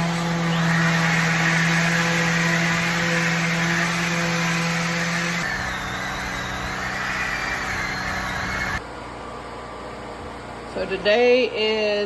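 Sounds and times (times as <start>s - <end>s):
electric sander on wood: 0.0s - 8.8s.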